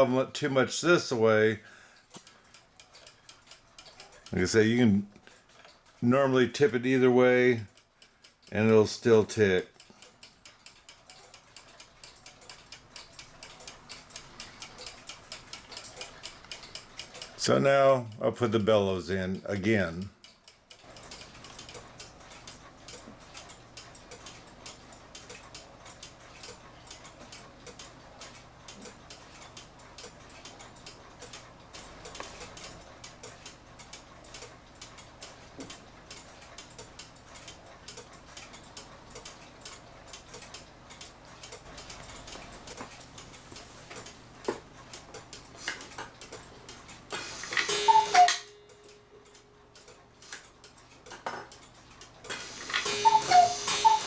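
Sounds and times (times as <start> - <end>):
cuckoo clock ticking: 0.0 - 54.0
falling whistle-like tone: 47.7 - 48.5, 52.8 - 54.0.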